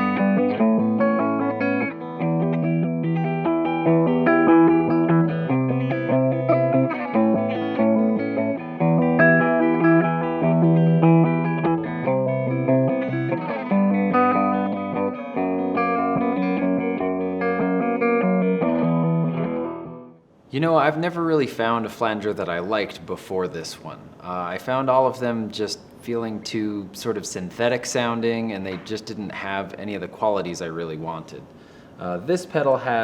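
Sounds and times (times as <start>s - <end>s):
electric guitar with flanger: 0.0s - 20.2s.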